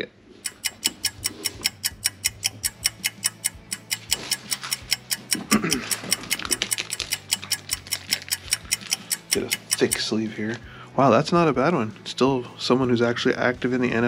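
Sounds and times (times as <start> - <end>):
rapid mechanical ticking: 0.0 - 10.2.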